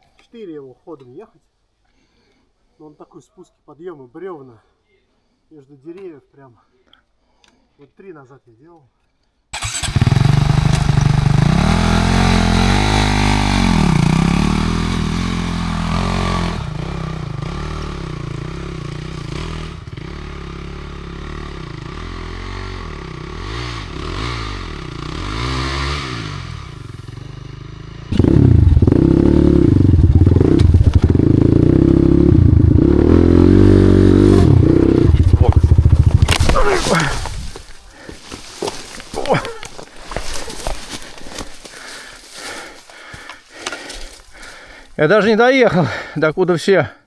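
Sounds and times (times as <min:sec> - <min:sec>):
dirt bike engine revving: 0:09.6 - 0:44.6.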